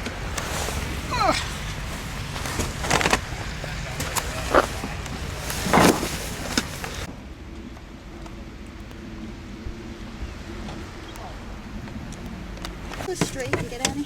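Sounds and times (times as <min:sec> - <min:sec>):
car driving rumble from cabin: 0:00.0 - 0:07.1.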